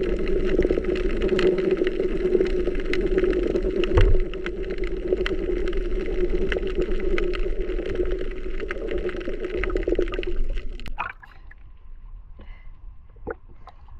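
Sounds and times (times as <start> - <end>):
low underwater drone: 0.0 - 13.9.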